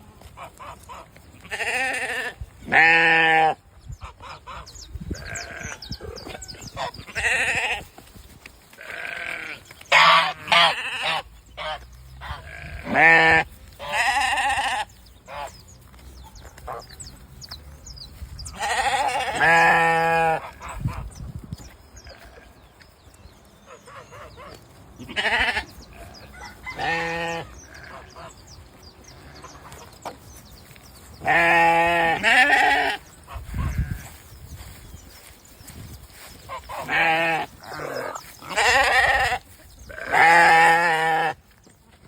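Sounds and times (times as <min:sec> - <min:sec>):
animal bleating: 0:00.0 - 0:03.6, 0:05.1 - 0:06.1, 0:06.8 - 0:07.9, 0:08.8 - 0:15.4, 0:18.5 - 0:20.7, 0:25.0 - 0:28.3, 0:31.2 - 0:34.2, 0:36.5 - 0:41.4.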